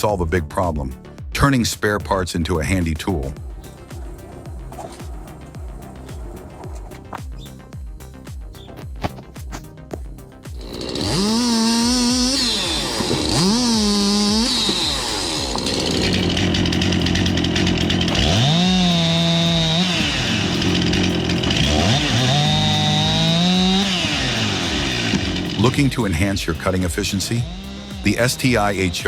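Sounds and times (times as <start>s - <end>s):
chainsaw engine revving: 3.2s - 7.2s, 10.5s - 29.0s.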